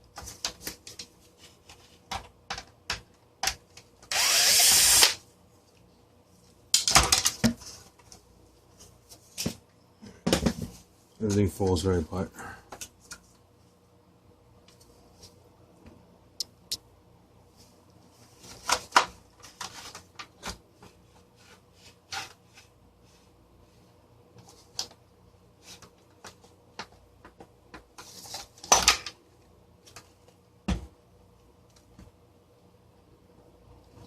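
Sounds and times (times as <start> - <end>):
plastic parts clicking and clattering: 6.7 - 8.2.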